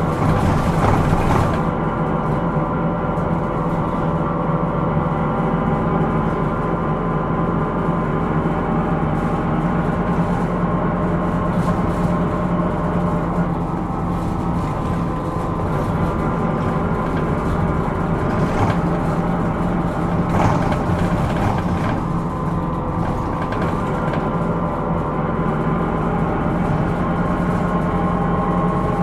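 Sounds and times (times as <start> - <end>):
bus engine hum: 0.0 - 29.0
short rattles: 13.3 - 24.6.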